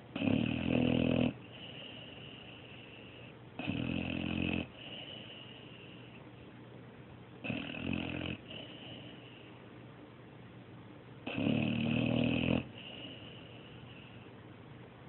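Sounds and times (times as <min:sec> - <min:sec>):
dog snoring: 0:00.1 - 0:06.2, 0:07.4 - 0:09.5, 0:11.2 - 0:14.2.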